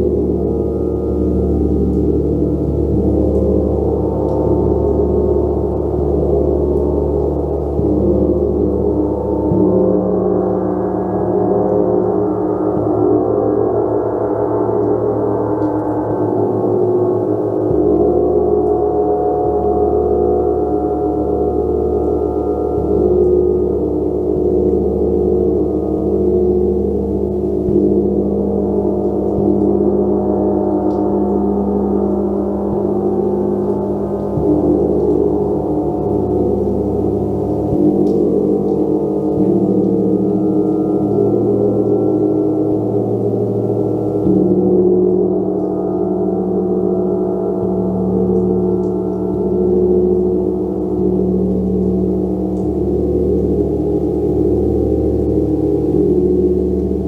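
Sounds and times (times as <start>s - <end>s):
gong struck: 22.0s - 57.0s.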